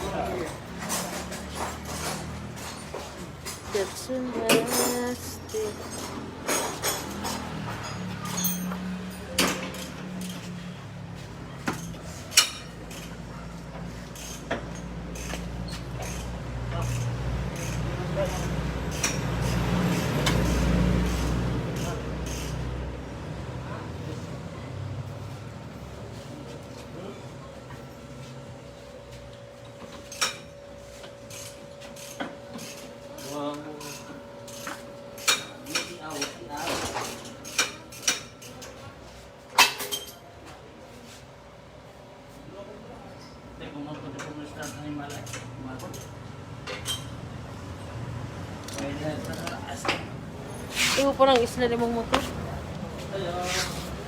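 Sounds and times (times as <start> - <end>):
metal tools clinking and scraping: 0.0 - 10.6, 14.0 - 22.6, 39.6 - 40.2, 44.6 - 47.2
metallic knocks and clanks of tools: 0.3 - 3.6, 4.4 - 10.5.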